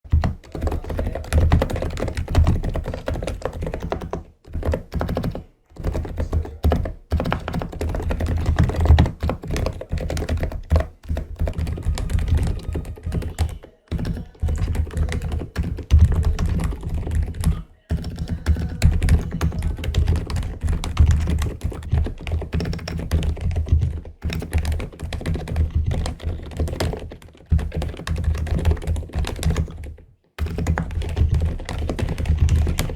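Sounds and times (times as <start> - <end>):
fast keyboard typing: 0.1 - 32.9.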